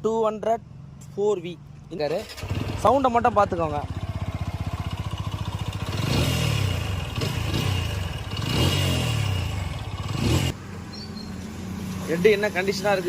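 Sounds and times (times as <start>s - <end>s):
motorcycle engine idling: 1.6s - 10.6s
motorcycle engine revving: 2.1s - 13.0s.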